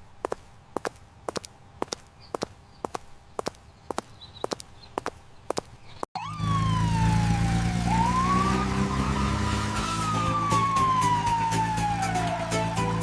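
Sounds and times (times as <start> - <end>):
siren wailing: 6.2 - 13.0.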